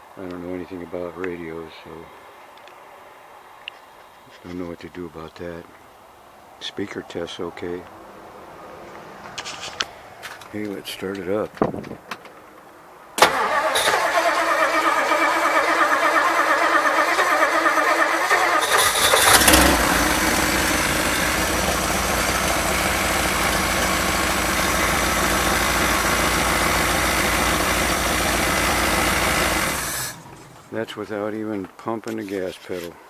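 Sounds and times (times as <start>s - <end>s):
starter motor cranking: 13.2s - 30.7s
car engine idling: 13.2s - 30.8s.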